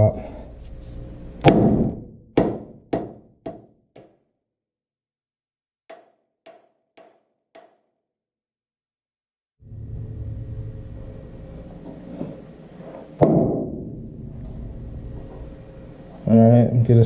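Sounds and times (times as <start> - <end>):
hammer striking steel: 1.4 - 4.2, 5.9 - 7.9.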